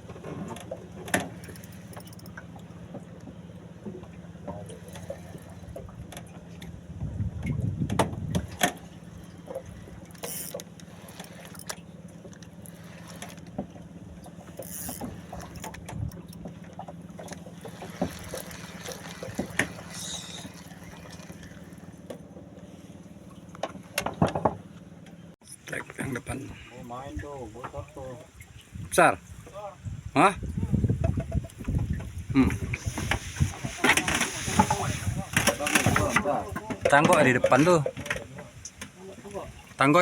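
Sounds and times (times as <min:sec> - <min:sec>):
boat engine humming: 0:00.0 - 0:40.0
gear knocking and clicking: 0:00.2 - 0:04.0, 0:09.6 - 0:13.8, 0:14.4 - 0:18.6.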